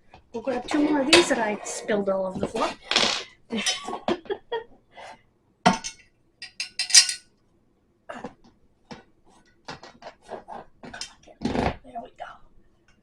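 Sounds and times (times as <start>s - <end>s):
small metal screws clinking: 5.8s - 7.2s.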